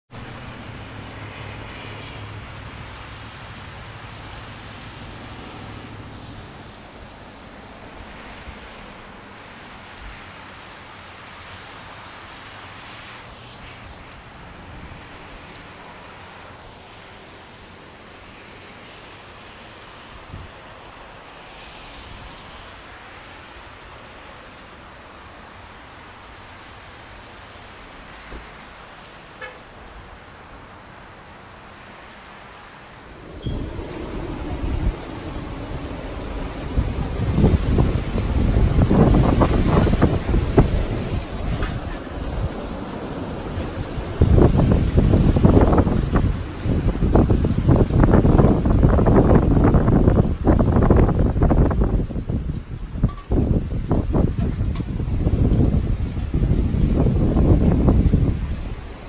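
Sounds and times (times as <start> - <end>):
heavy rain falling: 0.1 - 59.0
low rumble: 33.0 - 41.0.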